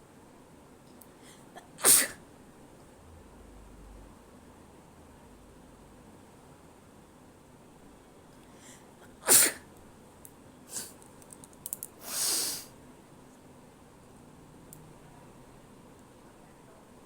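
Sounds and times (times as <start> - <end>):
person sneezing: 1.6 - 2.2, 9.2 - 9.7, 12.0 - 12.7
small clicks: 11.0 - 12.0
breathy exhale: 12.0 - 12.7.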